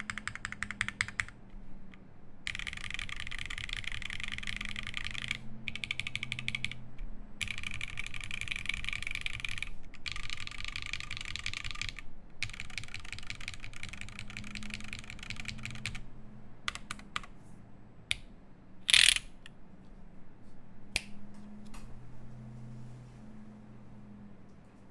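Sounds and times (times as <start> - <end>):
typing on mechanical keyboard: 0.0 - 1.4, 2.5 - 16.0, 16.7 - 17.4, 18.9 - 19.3.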